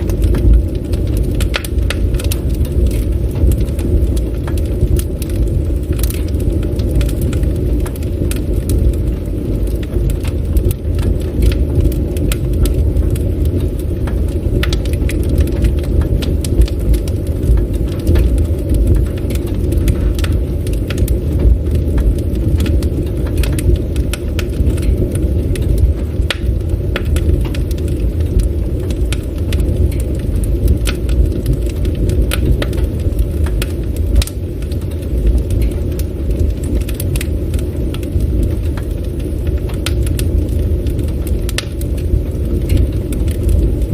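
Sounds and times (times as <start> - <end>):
steady low rumble: 0.0 - 43.9
wood crackling and popping: 0.0 - 43.9.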